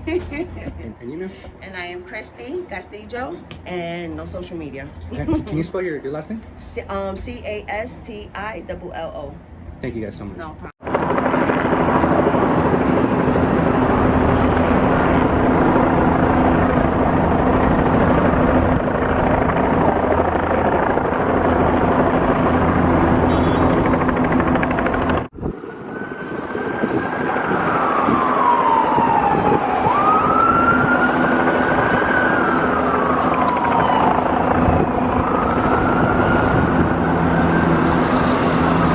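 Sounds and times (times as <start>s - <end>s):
emergency siren wailing: 10.8s - 38.9s.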